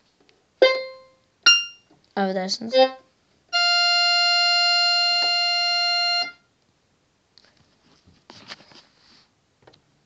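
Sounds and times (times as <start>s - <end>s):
scratchy handling noises: 7.4s - 9.4s.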